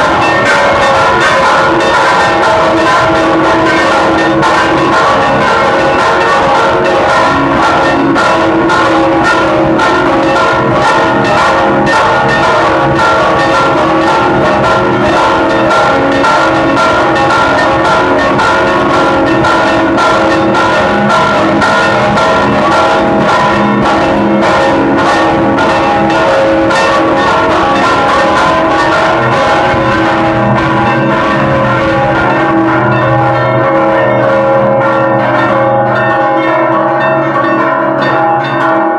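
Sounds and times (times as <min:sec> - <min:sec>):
church bells pealing: 0:00.0 - 0:38.9.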